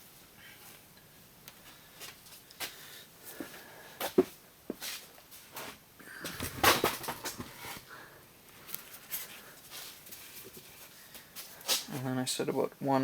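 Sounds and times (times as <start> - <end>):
plastic containers clicking and knocking: 6.3 - 7.6.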